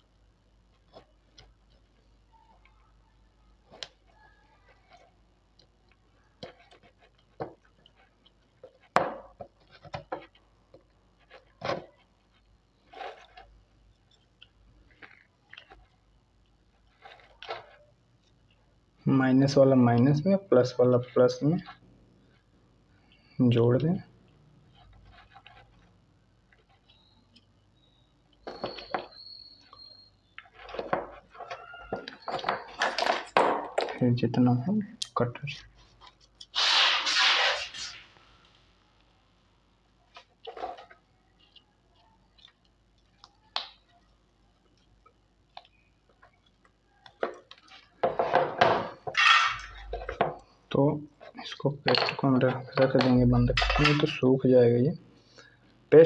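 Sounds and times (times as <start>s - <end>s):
short squeaks: 26.6s - 33.0s, 36.4s - 38.4s, 48.9s - 50.0s
tools clattering on a work bench: 30.8s - 34.0s, 48.0s - 50.4s, 51.8s - 54.2s.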